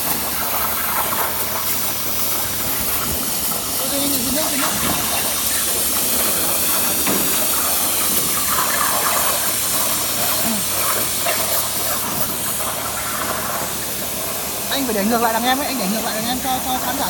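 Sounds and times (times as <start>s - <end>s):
plasma cutter torch hissing: 0.0s - 17.0s.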